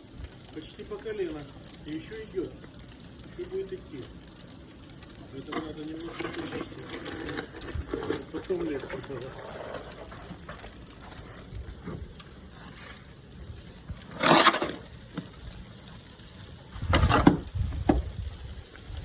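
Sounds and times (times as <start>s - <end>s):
shovel strokes in snow: 14.1s - 14.8s.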